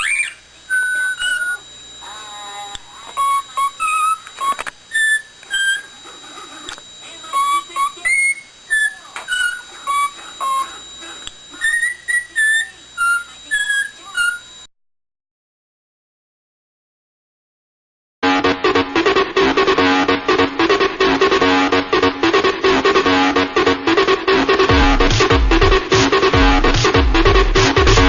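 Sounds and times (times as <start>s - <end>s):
parrot whistling: 0.0s - 10.8s, 11.5s - 14.6s.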